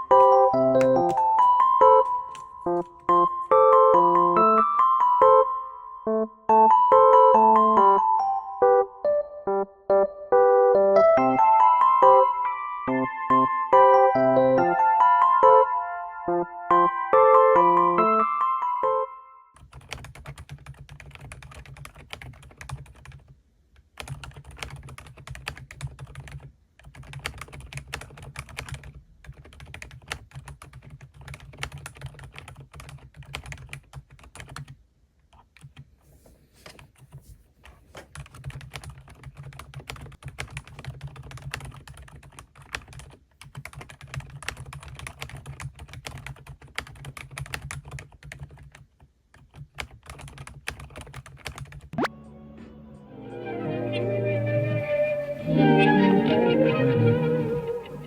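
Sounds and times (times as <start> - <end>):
typing on mechanical keyboard: 0.0 - 4.4, 19.6 - 35.9, 38.1 - 52.0.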